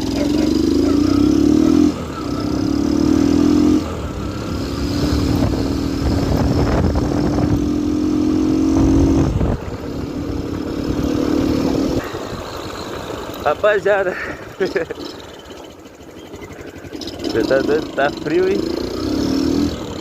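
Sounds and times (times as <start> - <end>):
motorcycle engine revving: 0.0 - 20.0
wind noise rumble: 4.1 - 12.6.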